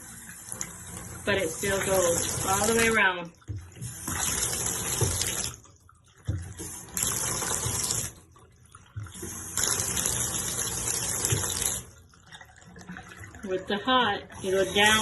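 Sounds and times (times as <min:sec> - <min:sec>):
shower water rushing: 0:00.0 - 0:05.6, 0:06.3 - 0:08.3, 0:08.9 - 0:12.0, 0:12.6 - 0:15.0.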